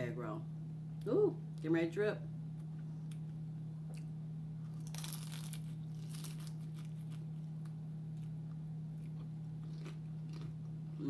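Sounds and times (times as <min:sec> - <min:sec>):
steady low hum: 0:00.0 - 0:11.0
crisp wrapper crunching when bitten: 0:04.7 - 0:07.4.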